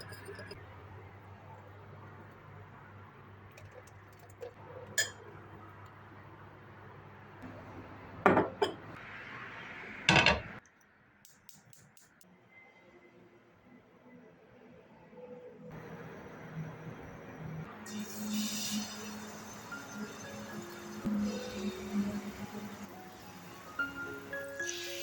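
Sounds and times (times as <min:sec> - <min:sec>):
glass and dishes clinking: 0:08.2 - 0:08.9
dishes clattering: 0:08.3 - 0:08.9, 0:10.1 - 0:10.5.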